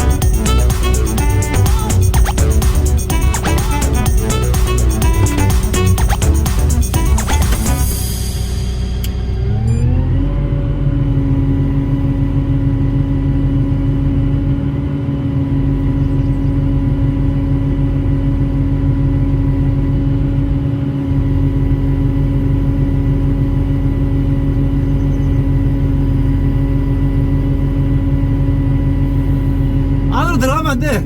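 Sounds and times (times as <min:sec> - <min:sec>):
low rumble: 0:00.0 - 0:14.6
excavator diesel engine whine: 0:00.0 - 0:31.0.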